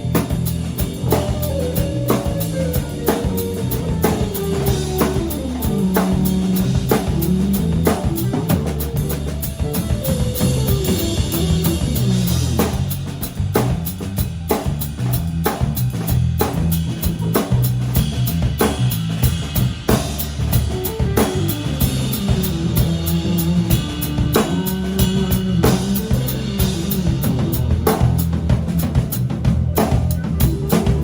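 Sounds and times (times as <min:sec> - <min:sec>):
bass line: 0:00.0 - 0:31.0
drum kit playing: 0:00.0 - 0:31.0
electric guitar line: 0:00.6 - 0:12.6.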